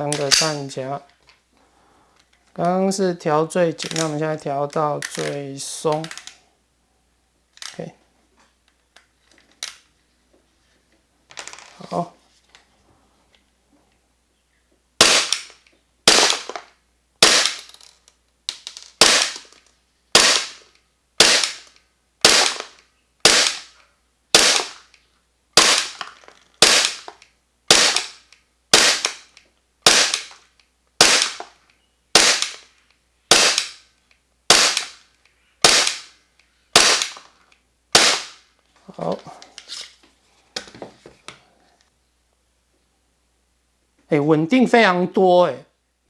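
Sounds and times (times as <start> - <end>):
airsoft pistol shots: 15.0 - 15.5, 16.1 - 16.6, 17.2 - 17.6, 19.0 - 19.5, 20.1 - 20.6, 21.2 - 23.7, 24.3 - 24.8, 25.6 - 26.0, 26.6 - 30.4, 31.0 - 31.5, 32.2 - 32.7, 33.3 - 33.8, 34.5 - 35.0, 35.6 - 36.1, 36.8 - 37.2, 37.9 - 38.4.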